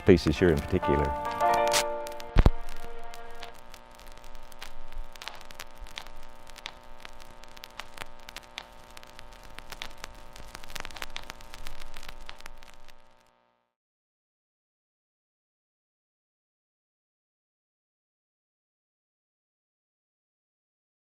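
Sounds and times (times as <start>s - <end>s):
background music of sustained chords: 0.0s - 4.6s
dense crackle of clicks: 0.3s - 13.3s.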